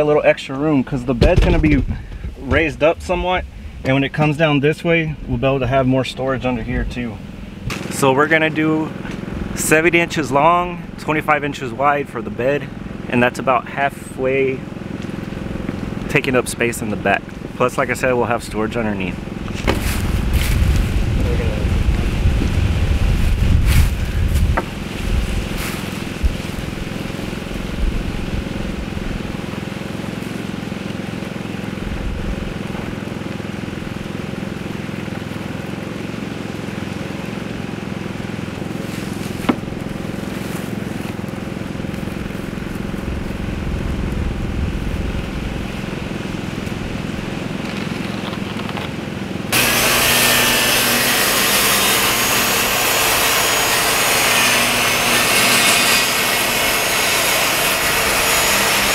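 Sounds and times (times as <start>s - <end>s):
mechanical hum: 0.0s - 13.4s, 14.0s - 58.9s
sharp knocks: 1.2s - 2.7s
power saw cutting wood: 7.6s - 22.5s, 23.1s - 43.4s, 45.6s - 58.9s.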